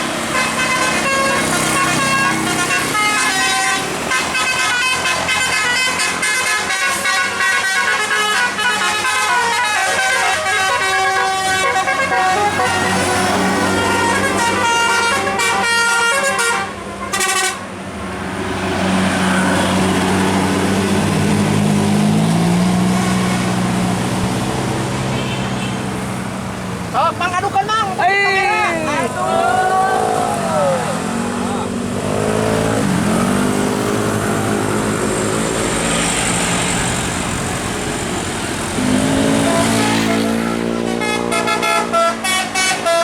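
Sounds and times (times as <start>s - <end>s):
bus engine running: 0.0s - 43.0s
musical air horn tune: 0.3s - 17.7s, 38.8s - 43.0s.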